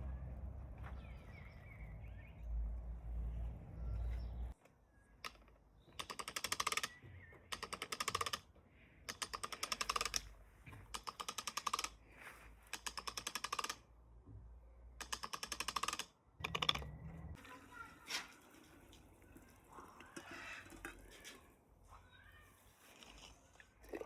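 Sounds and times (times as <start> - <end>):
rapid clicking bursts: 6.0 - 8.5, 9.1 - 10.3, 10.9 - 12.0, 12.7 - 13.8, 15.0 - 16.9.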